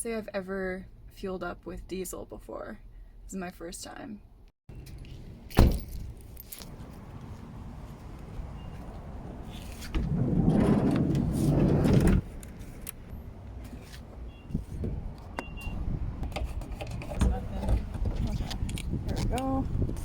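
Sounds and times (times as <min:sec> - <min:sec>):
steady low rumble: 0:05.3 - 0:13.6.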